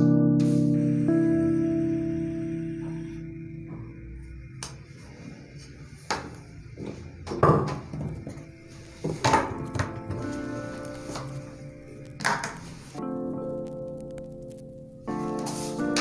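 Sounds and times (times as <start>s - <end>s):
acoustic guitar music: 8.2s - 16.0s.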